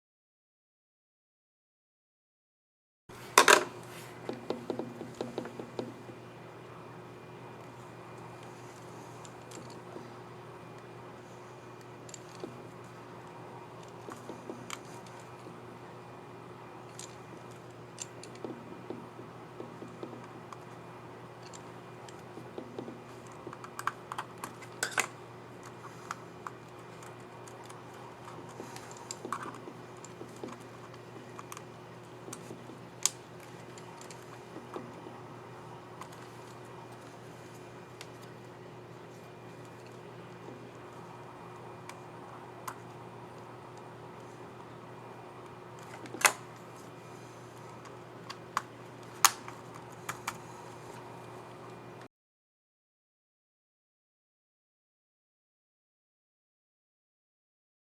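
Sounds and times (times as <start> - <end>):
plastic keyboard clicks and taps: 4.3 - 6.2, 18.0 - 20.3.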